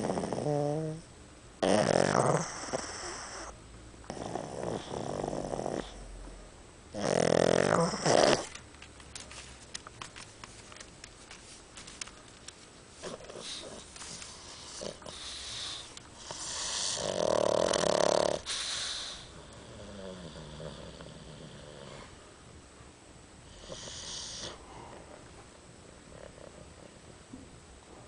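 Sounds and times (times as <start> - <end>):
pet snoring: 0.0 - 3.5, 4.1 - 6.1, 6.9 - 8.6, 13.0 - 22.1, 23.5 - 24.6.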